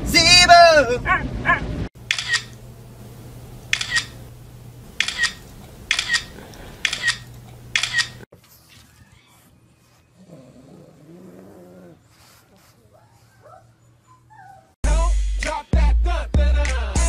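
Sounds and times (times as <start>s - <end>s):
camera shutter double clicks: 2.1s - 2.6s, 3.7s - 4.2s, 5.0s - 8.2s.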